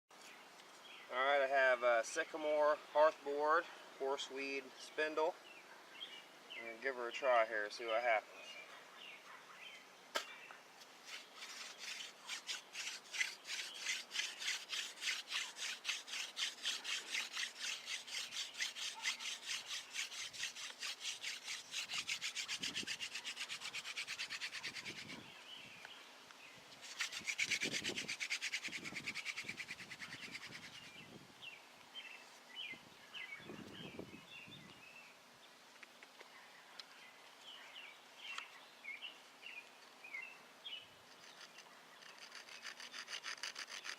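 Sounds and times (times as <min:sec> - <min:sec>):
birds chirping: 0:00.1 - 0:28.0, 0:28.7 - 0:35.6
wood-on-wood rubbing of hand drill: 0:11.0 - 0:25.2, 0:26.8 - 0:30.8, 0:41.1 - 0:43.9.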